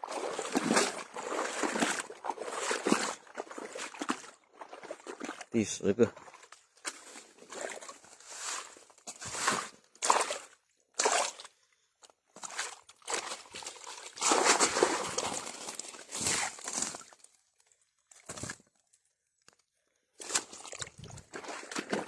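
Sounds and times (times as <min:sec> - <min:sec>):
water sloshing and splashing: 0:00.0 - 0:19.6, 0:20.2 - 0:22.0.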